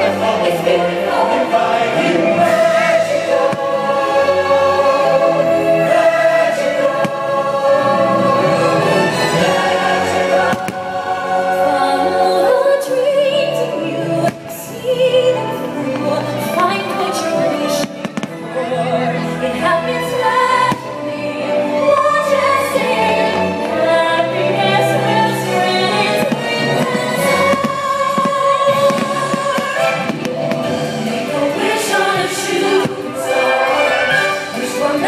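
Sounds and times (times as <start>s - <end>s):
orchestral music with choir: 0.0s - 35.0s.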